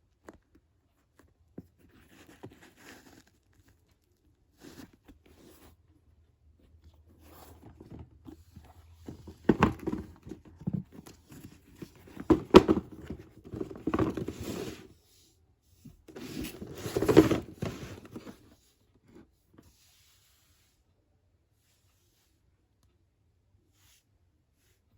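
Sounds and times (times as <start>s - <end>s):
rustling: 6.7s - 14.9s, 16.0s - 18.6s.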